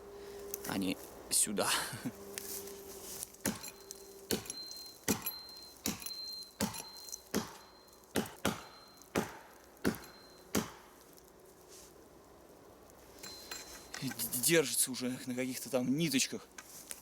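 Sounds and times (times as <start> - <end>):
axe chopping tree trunk: 3.4 - 11.0.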